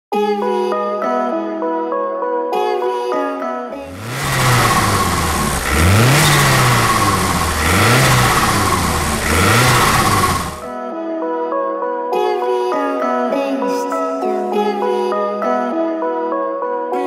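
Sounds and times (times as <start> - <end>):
music: 0.1 - 4.0, 10.6 - 17.0
car engine revving: 3.9 - 10.7.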